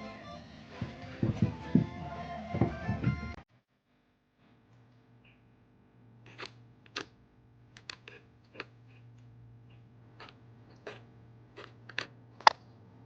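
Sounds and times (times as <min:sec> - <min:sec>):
low steady hum: 0:04.4 - 0:13.0.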